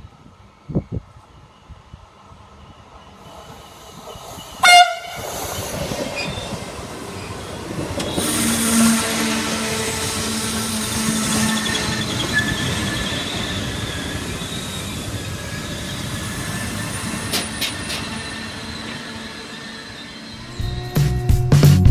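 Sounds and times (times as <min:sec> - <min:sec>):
train rail and wheel noise: 0:00.0 - 0:21.9
train horn blast: 0:04.6 - 0:05.2, 0:08.0 - 0:12.2.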